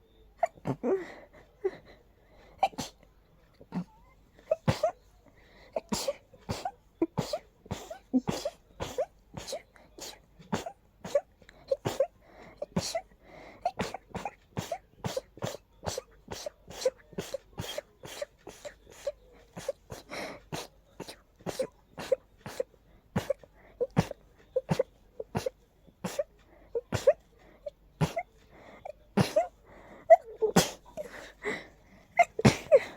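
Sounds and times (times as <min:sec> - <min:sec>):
person sneezing: 0:13.7 - 0:27.2, 0:29.2 - 0:32.9.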